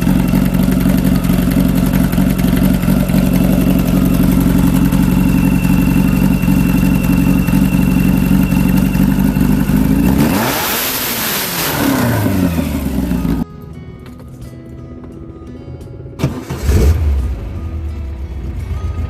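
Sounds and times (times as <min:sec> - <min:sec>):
drag car engine running loud: 0:00.0 - 0:13.4.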